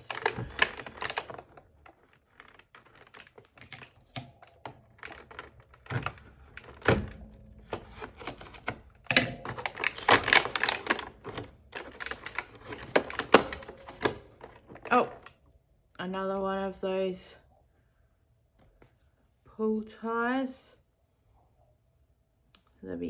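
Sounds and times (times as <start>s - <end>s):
hands opening advent calendar: 0.0s - 15.5s.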